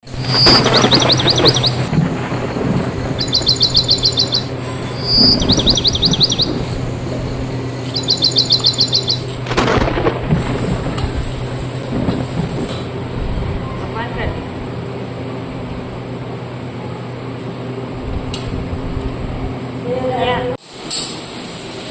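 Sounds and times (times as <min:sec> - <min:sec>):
bird song: 0:00.0 - 0:01.9, 0:03.1 - 0:09.4
low steady hum: 0:00.0 - 0:20.6.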